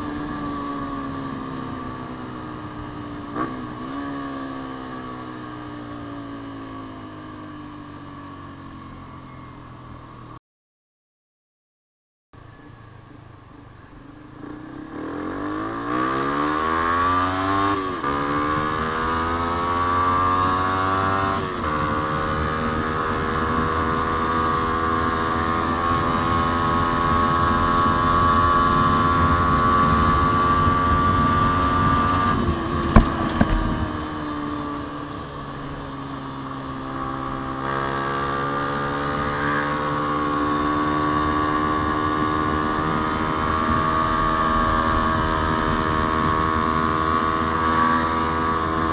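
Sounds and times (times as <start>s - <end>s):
motorcycle engine revving: 0.0s - 10.4s, 13.9s - 48.9s.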